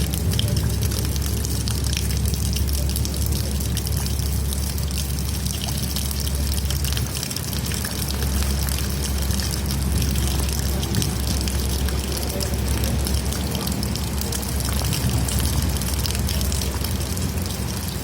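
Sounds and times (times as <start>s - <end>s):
low rumble: 0.0s - 18.0s
rainwater trickling and dripping: 0.0s - 18.0s.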